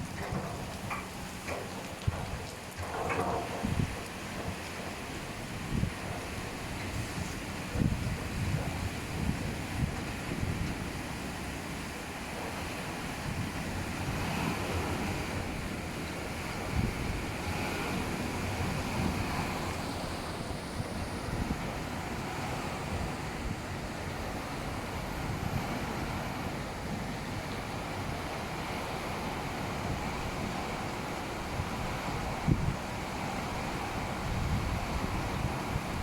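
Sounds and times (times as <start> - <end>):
vehicle washing machine running: 11.9 - 34.6.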